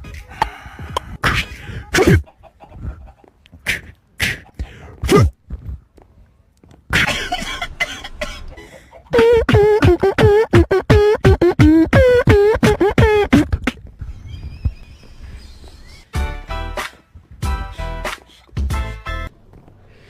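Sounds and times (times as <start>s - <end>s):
beatboxed breathy hiss: 3.6s - 4.6s, 17.8s - 18.7s
beatboxed pitched notes: 3.6s - 5.3s, 9.1s - 19.1s.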